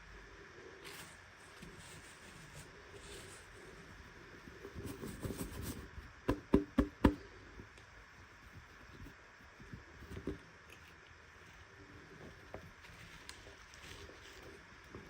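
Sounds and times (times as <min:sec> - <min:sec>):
faint handling clicks and rustles: 0:07.6 - 0:15.0.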